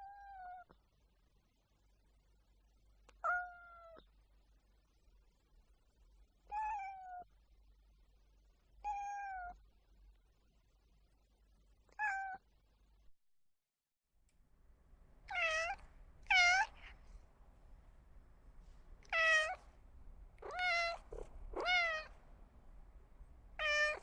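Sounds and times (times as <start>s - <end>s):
cat meowing: 3.2s - 4.0s, 8.9s - 9.5s, 12.0s - 12.4s, 15.3s - 17.2s, 18.6s - 24.0s.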